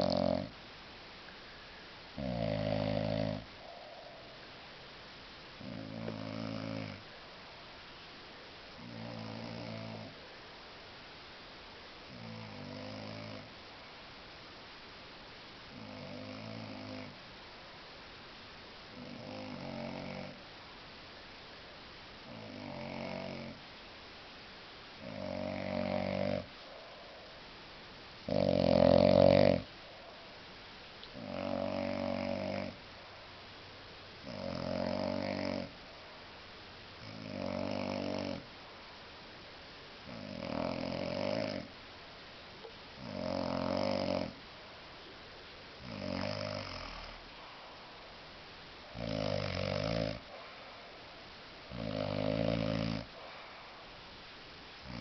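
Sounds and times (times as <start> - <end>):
man snoring: 0.0 - 0.5, 2.2 - 3.9, 5.6 - 7.0, 8.8 - 10.2, 12.1 - 13.5, 15.7 - 17.2, 18.9 - 20.4, 22.2 - 23.6, 25.0 - 26.5, 28.2 - 29.7, 31.2 - 32.8, 34.2 - 35.8, 37.0 - 38.5, 40.1 - 41.7, 43.0 - 44.4, 45.8 - 47.2, 48.9 - 50.3, 51.7 - 53.2
quiet breaths: 0.0 - 55.0.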